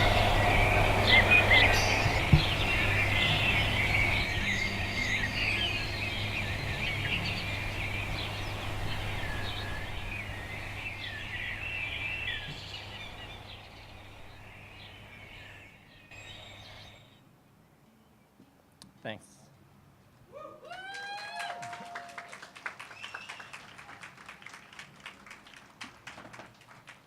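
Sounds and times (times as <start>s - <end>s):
small birds chirping: 0.0s - 18.3s
low steady hum: 0.0s - 18.8s.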